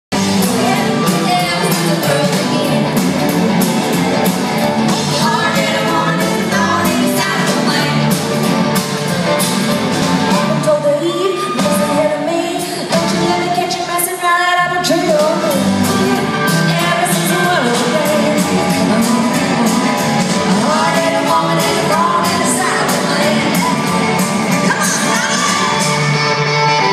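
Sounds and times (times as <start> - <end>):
band accompaniment with steady beat: 0.1 - 26.9
person singing: 5.0 - 8.2, 10.5 - 26.1.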